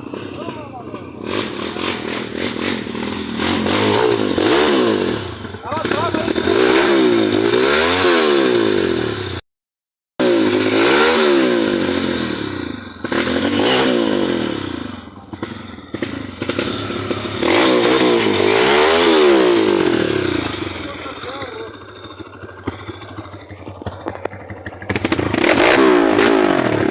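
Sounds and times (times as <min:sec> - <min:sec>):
motorcycle engine revving: 0:00.0 - 0:09.4, 0:10.2 - 0:26.9
rattling and clatter: 0:15.2 - 0:26.9.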